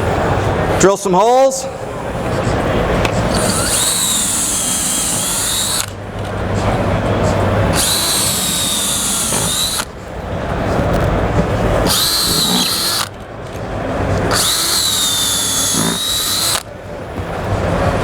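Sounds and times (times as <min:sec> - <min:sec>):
power drill whining: 0:03.2 - 0:10.1, 0:10.9 - 0:16.7.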